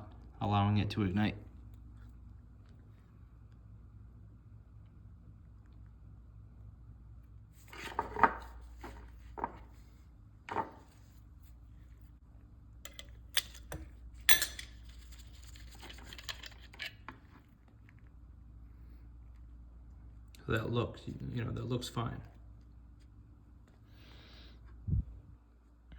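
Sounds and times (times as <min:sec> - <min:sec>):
low steady hum: 0:00.0 - 0:25.9
metal tools clinking and scraping: 0:12.9 - 0:17.1.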